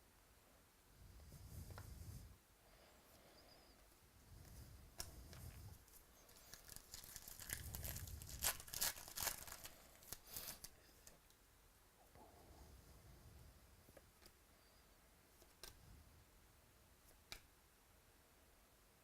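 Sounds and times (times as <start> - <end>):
foil wrapper tearing and crinkling: 6.3 - 10.7.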